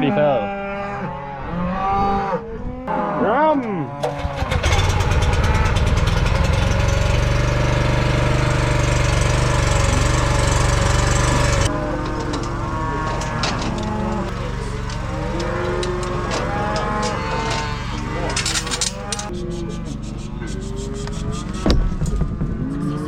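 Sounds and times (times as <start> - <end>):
small gasoline engine running: 4.0 - 21.5
calves bawling: 9.0 - 21.8.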